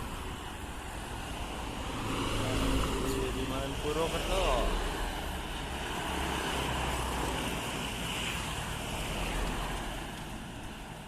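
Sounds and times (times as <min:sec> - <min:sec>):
road vehicle passing: 0:00.0 - 0:11.0.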